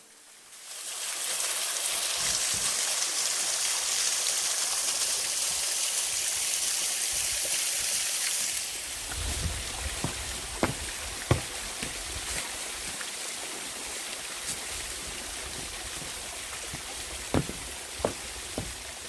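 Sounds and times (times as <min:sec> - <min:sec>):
waterfall rushing: 0:09.2 - 0:19.0.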